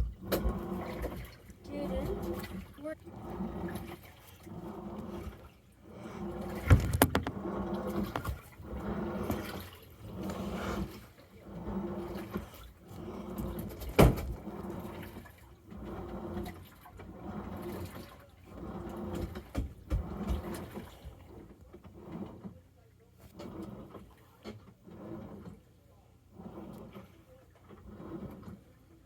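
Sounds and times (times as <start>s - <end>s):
washing machine drum turning: 0.0s - 22.4s
motor hum: 0.0s - 29.0s
water sloshing: 0.0s - 29.0s
sharp knocks: 6.7s - 7.4s.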